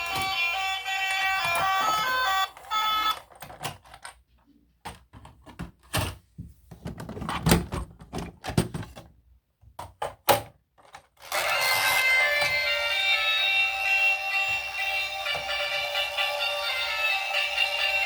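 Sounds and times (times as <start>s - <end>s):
toys and packaging handled: 0.0s - 18.0s.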